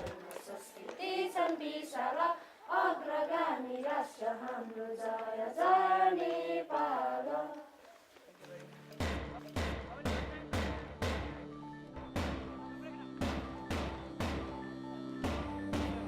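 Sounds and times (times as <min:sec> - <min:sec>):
high voices singing together: 0:00.0 - 0:07.8.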